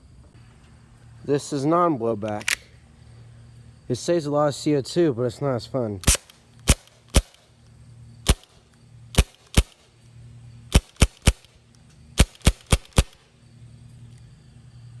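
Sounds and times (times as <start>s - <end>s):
airsoft gun firing pops: 6.0s - 7.5s, 8.2s - 8.6s, 9.2s - 9.8s, 10.7s - 11.5s, 12.2s - 13.2s.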